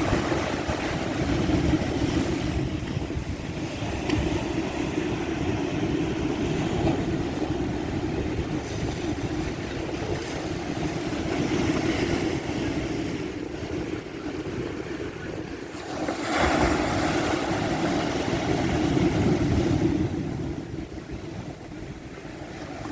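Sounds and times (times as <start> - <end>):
ocean waves breaking: 0.0 - 22.9.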